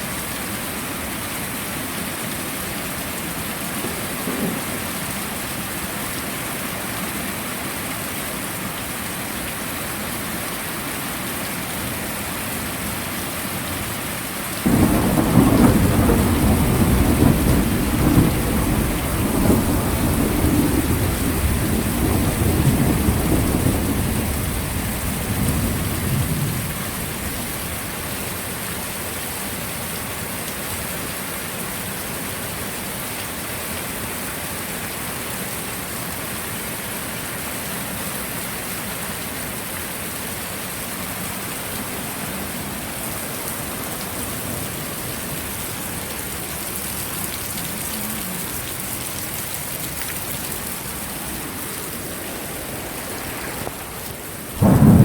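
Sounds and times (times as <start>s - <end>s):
heavy rain: 0.0s - 55.0s
thunderclap rumbling: 3.8s - 4.9s, 14.7s - 27.7s, 50.5s - 55.0s.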